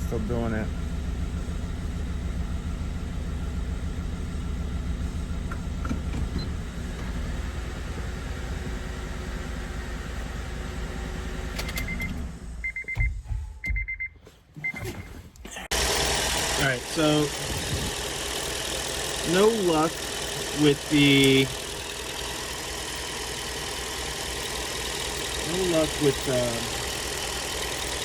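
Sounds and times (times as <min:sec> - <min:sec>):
car engine idling with misfire: 0:00.0 - 0:13.3, 0:15.5 - 0:28.0
car electronic chime beeping: 0:11.6 - 0:15.1.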